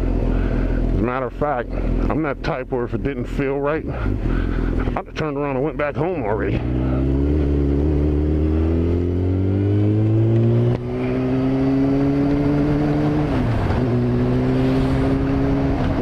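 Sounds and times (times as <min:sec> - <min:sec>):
motorcycle engine revving: 0:03.9 - 0:05.0, 0:06.0 - 0:16.0.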